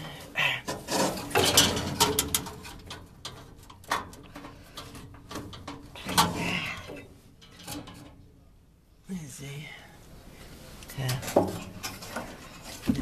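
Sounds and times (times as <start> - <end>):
metal scraping and rattling: 0.0 - 8.4, 11.0 - 13.0.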